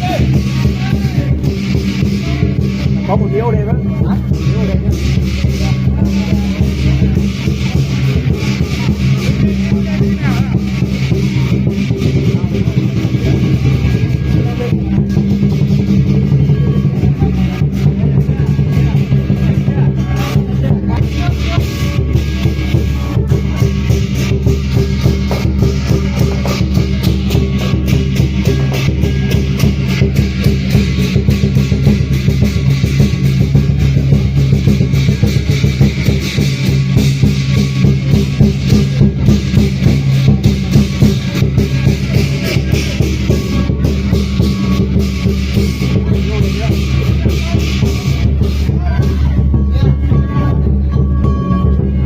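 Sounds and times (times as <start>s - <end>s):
big drum beaten fast: 0.0s - 52.0s
crashing cymbals: 0.0s - 52.0s.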